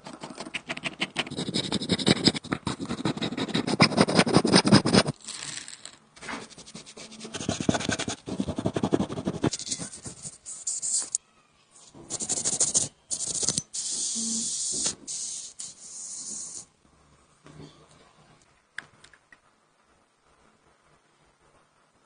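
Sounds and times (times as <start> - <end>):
rapid scratchy brushing: 0.1 - 5.2, 6.4 - 11.2
hissing bursts of spray: 13.7 - 16.6.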